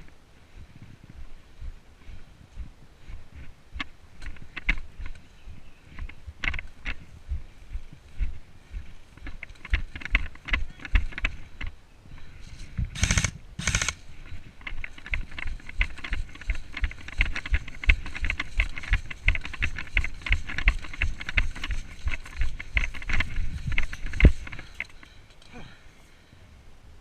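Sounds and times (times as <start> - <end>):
footsteps on rough ground: 0.0 - 25.2
gear rattling and rustling: 2.1 - 11.8, 12.4 - 25.7
loud rushing bursts: 13.0 - 14.0.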